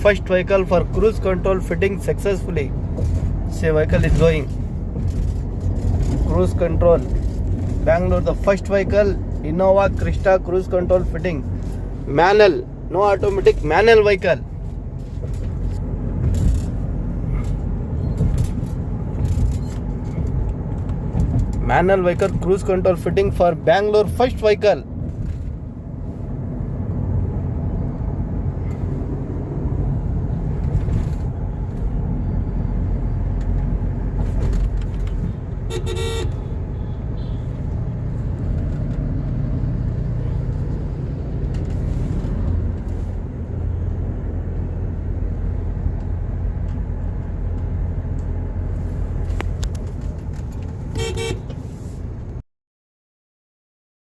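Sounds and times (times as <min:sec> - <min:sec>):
car driving rumble: 0:00.0 - 0:52.4
car horn toots: 0:35.7 - 0:37.5, 0:51.0 - 0:51.5.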